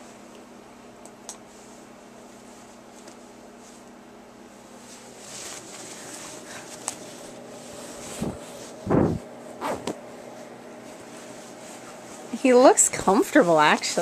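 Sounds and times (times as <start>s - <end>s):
snowsuit rustling: 4.7s - 14.0s.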